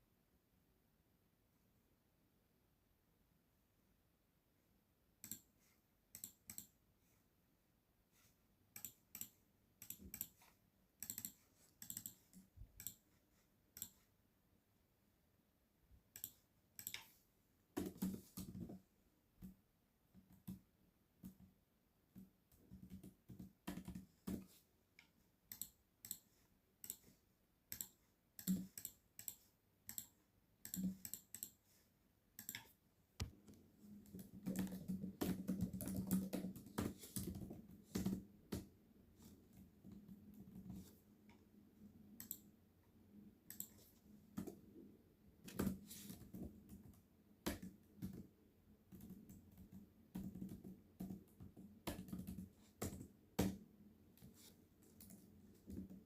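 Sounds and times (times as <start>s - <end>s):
mouse clicks: 5.2s - 6.8s, 8.7s - 10.4s, 11.0s - 13.0s, 16.1s - 17.2s, 27.7s - 31.6s, 32.4s - 33.6s, 42.2s - 42.5s, 43.5s - 44.5s
typing on computer keyboard: 8.8s - 10.4s, 11.0s - 13.0s, 27.7s - 31.6s, 32.4s - 33.3s, 34.1s - 38.2s.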